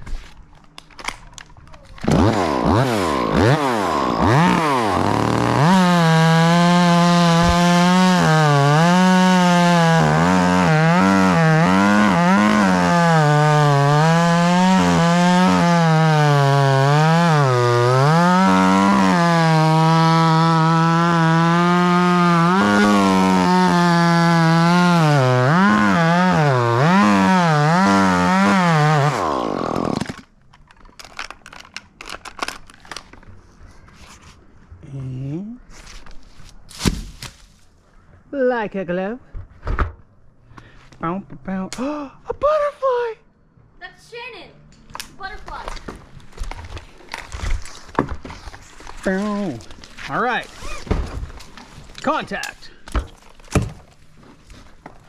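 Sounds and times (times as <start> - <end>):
chainsaw revving: 2.0 - 30.2
chainsaw cutting wood: 2.0 - 30.3.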